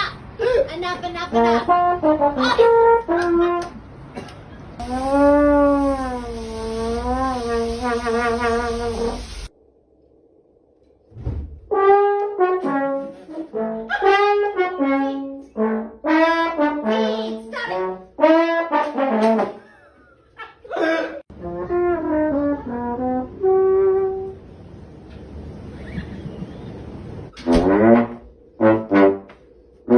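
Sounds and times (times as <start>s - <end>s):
brass melody: 1.3s - 3.7s, 4.8s - 9.5s, 11.7s - 19.6s, 21.3s - 24.6s, 27.4s - 29.9s.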